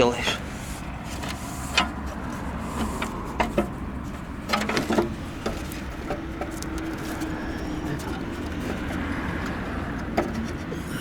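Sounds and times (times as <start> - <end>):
clicks and knocks of part fitting: 1.1 - 10.8.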